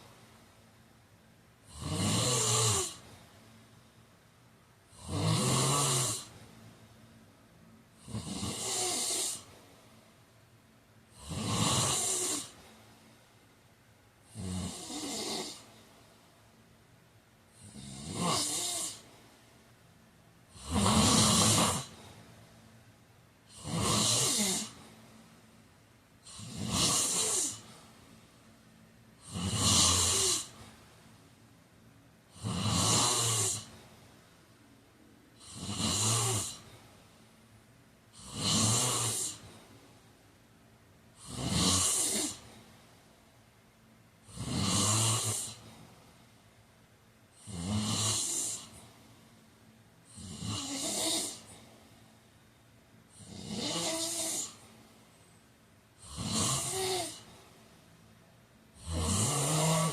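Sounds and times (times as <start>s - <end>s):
person snoring: 1.6s - 3.1s, 4.9s - 6.4s, 8.0s - 9.5s, 11.1s - 12.6s, 14.3s - 15.7s, 17.5s - 19.0s, 20.5s - 22.1s, 23.5s - 24.8s, 26.2s - 27.8s, 29.2s - 30.7s, 32.3s - 33.8s, 35.4s - 36.7s, 38.1s - 39.6s, 41.2s - 42.6s, 44.2s - 45.8s, 47.4s - 48.9s, 50.1s - 51.6s, 53.1s - 54.6s, 56.0s - 57.4s, 58.8s - 59.9s.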